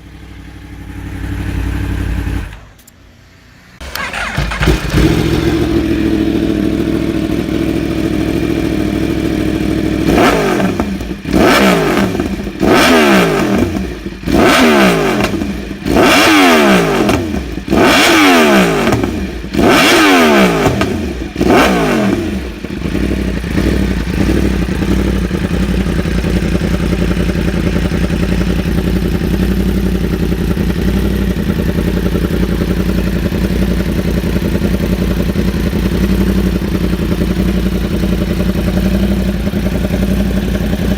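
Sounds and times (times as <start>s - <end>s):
motorcycle engine idling and revving: 0.0s - 40.9s.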